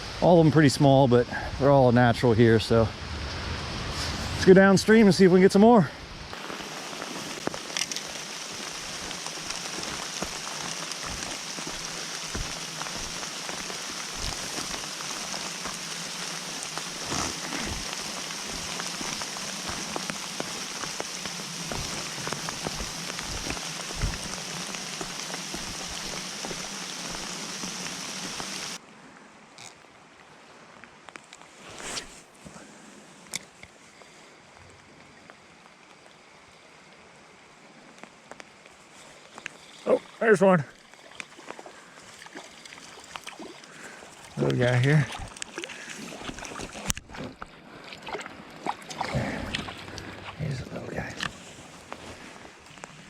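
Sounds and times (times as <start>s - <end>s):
rain falling: 0.0s - 28.8s, 34.9s - 47.0s, 48.8s - 53.0s
raindrops tapping: 6.4s - 28.8s.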